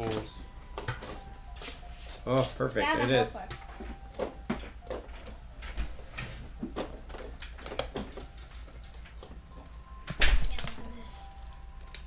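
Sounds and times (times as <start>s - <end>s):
hand tools clicking and knocking: 2.4s - 10.8s.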